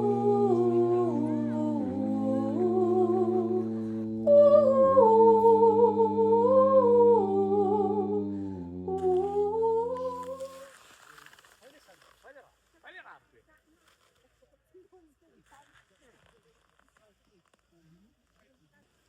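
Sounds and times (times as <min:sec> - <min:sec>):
low steady drone: 0:00.0 - 0:10.5
wordless humming vocals: 0:00.0 - 0:10.7.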